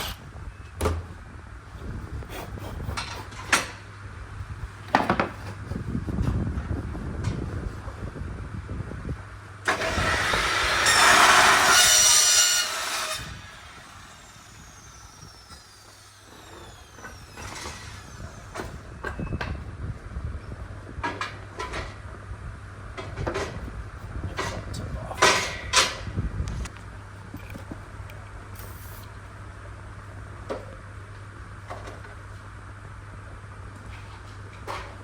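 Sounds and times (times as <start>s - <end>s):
motorised tool running: 13.2s - 19.0s.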